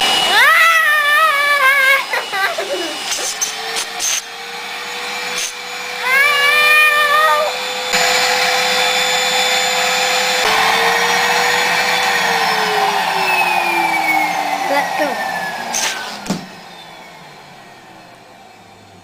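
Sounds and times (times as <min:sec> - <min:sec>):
vacuum cleaner motor whine: 0:00.0 - 0:19.0
wavering meow-like cry: 0:06.0 - 0:07.5.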